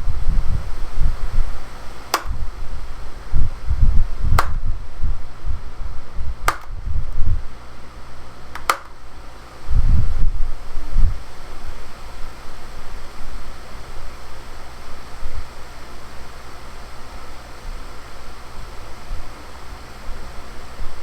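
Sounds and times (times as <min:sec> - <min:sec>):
fan blowing air on microphone: 0:00.0 - 0:21.0
sharp click: 0:02.1 - 0:02.4, 0:04.4 - 0:04.6, 0:06.5 - 0:06.8, 0:08.5 - 0:09.0.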